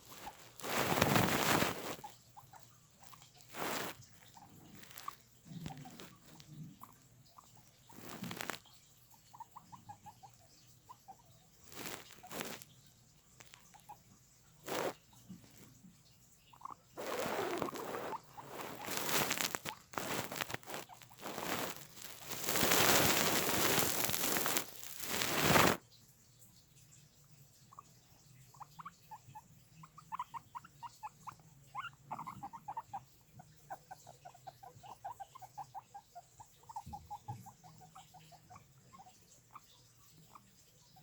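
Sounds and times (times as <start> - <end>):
rustling: 0.0 - 14.0, 14.6 - 15.8, 16.5 - 25.8
guinea pigs squeaking: 0.0 - 25.8, 26.5 - 41.0.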